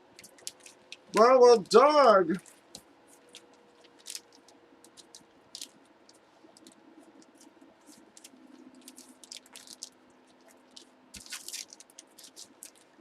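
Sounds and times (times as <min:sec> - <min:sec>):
cards and plastic sleeves crinkling: 0:00.0 - 0:13.0.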